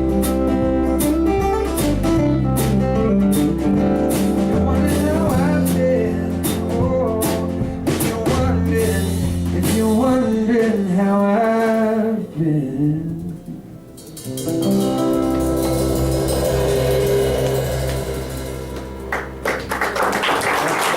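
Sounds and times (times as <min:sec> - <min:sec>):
electric guitar: 0:00.0 - 0:10.7, 0:13.0 - 0:20.3
steady low bass: 0:00.0 - 0:11.0, 0:14.8 - 0:19.8
drum kit: 0:00.0 - 0:12.1, 0:12.7 - 0:20.9.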